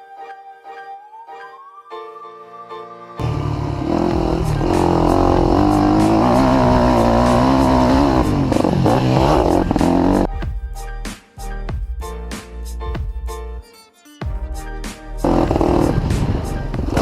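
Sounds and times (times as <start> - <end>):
music: 0.0 - 17.0
dirt bike engine running hard: 3.2 - 10.3, 15.2 - 17.0.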